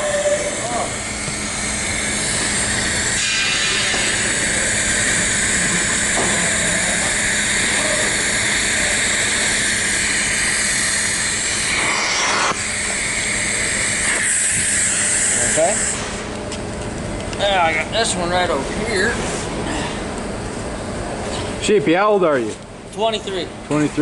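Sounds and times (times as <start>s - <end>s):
welding arc hissing: 0.0s - 16.3s.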